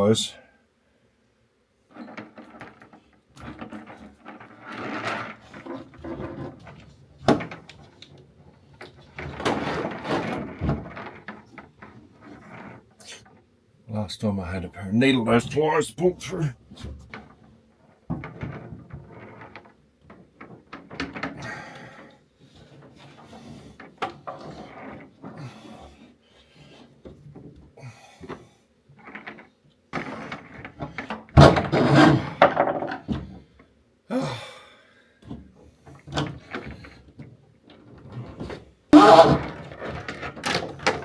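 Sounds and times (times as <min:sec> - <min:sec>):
tools knocking and scraping: 0:29.0 - 0:33.5.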